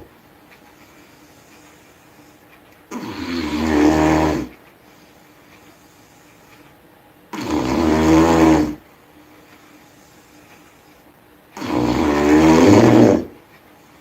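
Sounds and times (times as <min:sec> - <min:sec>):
person snoring loudly: 0:02.9 - 0:04.5, 0:07.3 - 0:08.8, 0:11.6 - 0:13.4.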